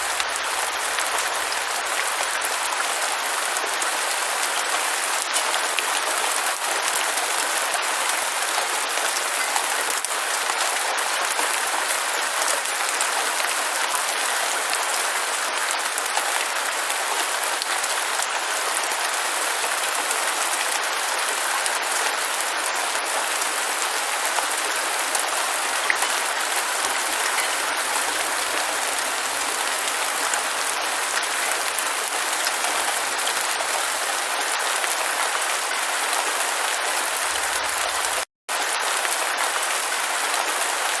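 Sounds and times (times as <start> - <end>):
steady rain falling: 0.0 - 41.0.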